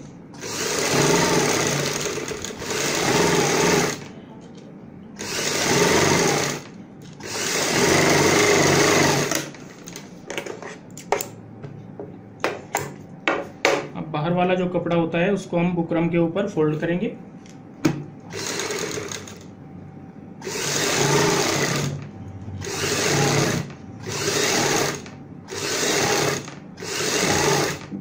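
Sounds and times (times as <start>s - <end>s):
sewing machine stitching: 0.4s - 4.1s, 5.2s - 9.6s, 18.3s - 19.4s, 20.4s - 22.0s, 22.6s - 27.9s.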